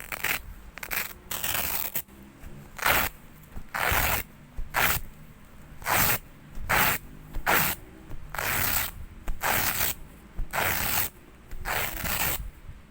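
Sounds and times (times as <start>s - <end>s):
velcro tape ripping: 0.0s - 2.1s, 2.8s - 3.1s, 3.7s - 5.0s, 5.8s - 7.8s, 8.4s - 12.4s.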